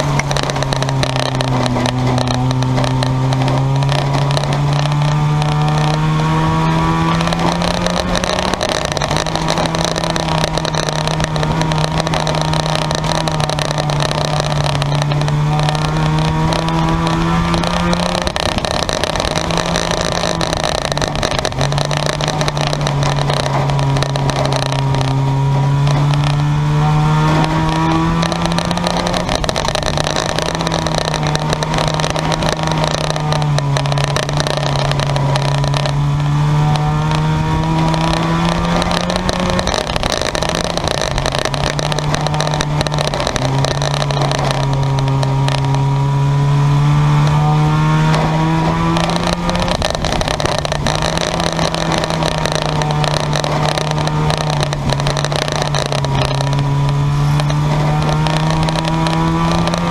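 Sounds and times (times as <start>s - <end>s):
race car engines revving: 0.0s - 59.9s.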